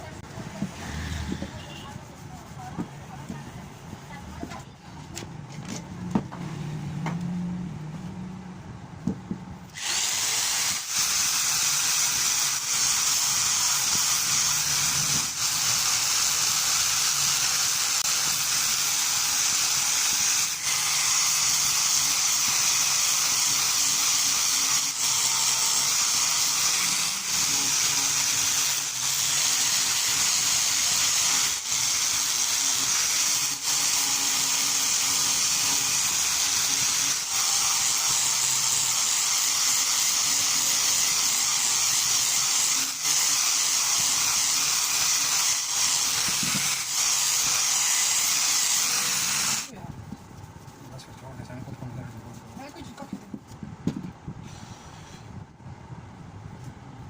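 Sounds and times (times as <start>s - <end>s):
electric power tool on wood: 9.7s - 49.7s.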